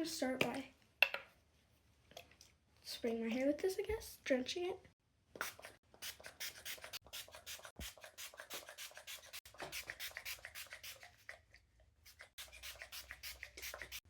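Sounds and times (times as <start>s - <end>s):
spray bottle squirting: 5.4s - 11.4s, 12.1s - 14.0s.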